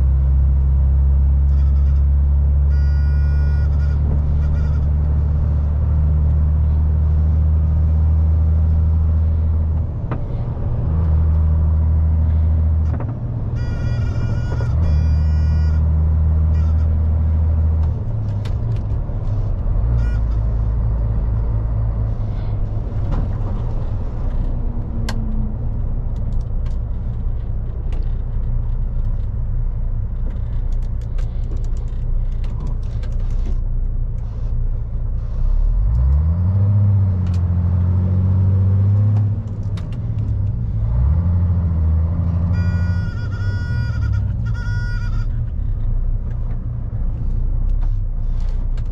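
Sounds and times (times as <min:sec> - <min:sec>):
gear changes: 0:00.0 - 0:48.9
lorry diesel engine droning: 0:00.0 - 0:48.9
brief high-pitched tone: 0:02.7 - 0:04.8, 0:13.6 - 0:15.9, 0:42.5 - 0:45.3.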